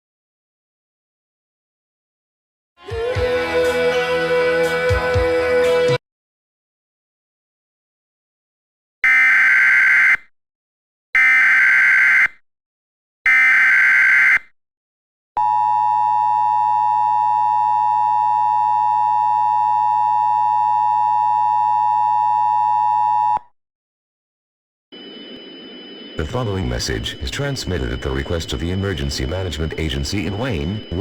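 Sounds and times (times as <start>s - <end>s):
harsh digital data tones: 25.0s - 31.0s
steady electronic attention tone: 25.0s - 31.0s.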